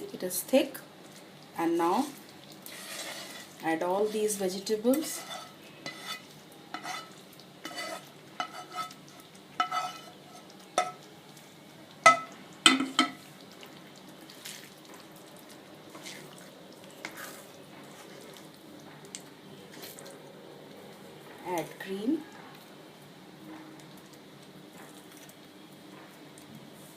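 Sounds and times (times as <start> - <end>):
frying sizzle: 0.0 - 26.9
spoon knocking against pan: 12.0 - 13.2.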